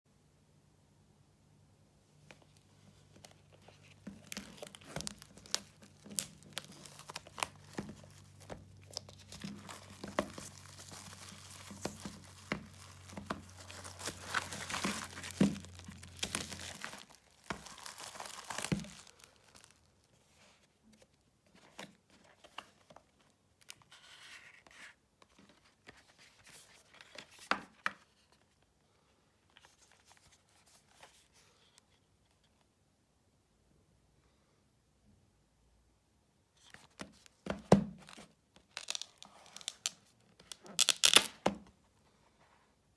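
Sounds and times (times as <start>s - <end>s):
plastic wrapping crinkling: 2.3s - 20.2s, 38.0s - 41.4s.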